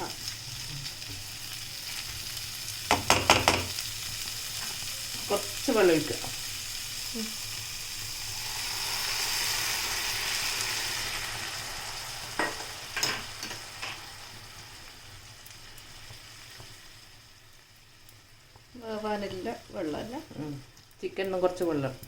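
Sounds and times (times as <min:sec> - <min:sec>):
food sizzling in a pan: 0:00.0 - 0:22.0
spoon knocking against pan: 0:02.9 - 0:03.8
water poured into pan: 0:07.4 - 0:15.8.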